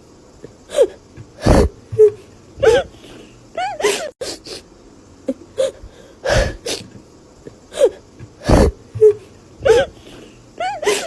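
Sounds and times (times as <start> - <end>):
sharp gasping breaths: 5.6 - 6.9.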